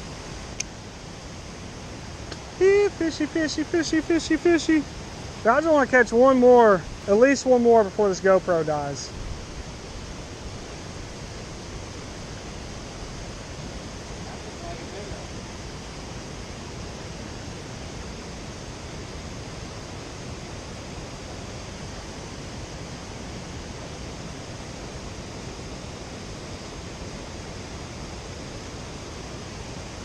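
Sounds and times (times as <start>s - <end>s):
waterfall rushing: 1.6s - 18.3s.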